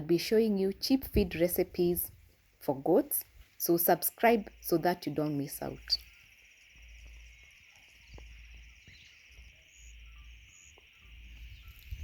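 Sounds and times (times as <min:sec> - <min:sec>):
wind rumble on microphone: 0:00.6 - 0:02.4, 0:06.8 - 0:12.0
insect chirring: 0:03.6 - 0:12.0.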